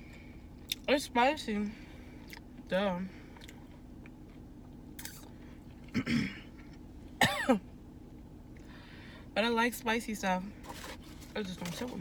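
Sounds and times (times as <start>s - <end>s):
woman coughing: 5.9s - 6.5s, 7.2s - 7.6s.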